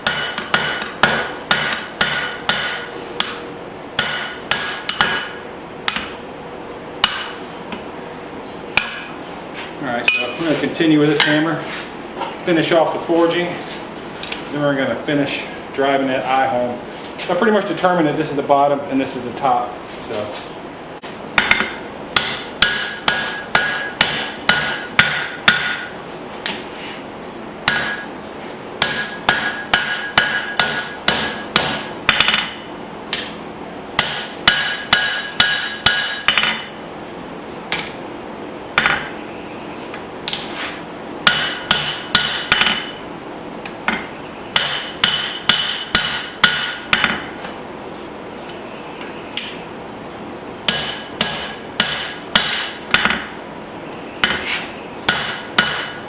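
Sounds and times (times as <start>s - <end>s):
hammer striking metal on anvil: 0.0s - 3.4s, 4.0s - 6.2s, 7.0s - 7.4s, 8.8s - 9.2s, 10.1s - 10.4s, 21.4s - 25.9s, 27.6s - 28.1s, 28.8s - 33.4s, 34.0s - 36.7s, 41.3s - 43.0s, 43.6s - 47.3s, 50.7s - 53.3s, 55.1s - 56.0s.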